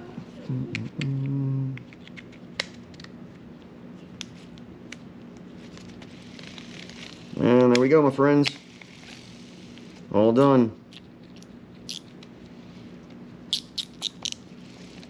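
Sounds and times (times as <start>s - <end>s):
low voiced hum: 0.0s - 2.2s
fishing reel parts clicking: 13.5s - 14.4s.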